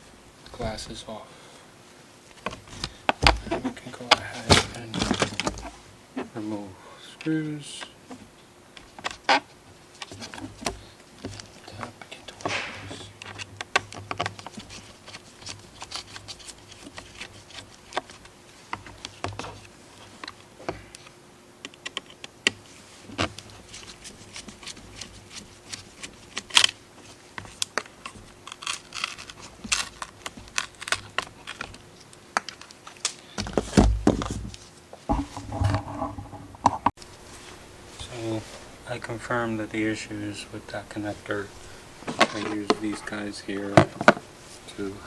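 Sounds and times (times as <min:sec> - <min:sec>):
low thumps: 0:35.1 - 0:36.9.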